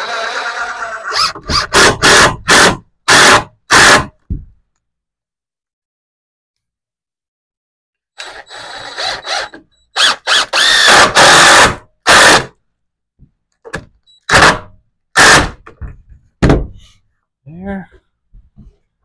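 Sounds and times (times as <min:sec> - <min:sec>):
power drill driving screws: 0:00.0 - 0:04.1, 0:08.2 - 0:12.5, 0:14.2 - 0:15.6.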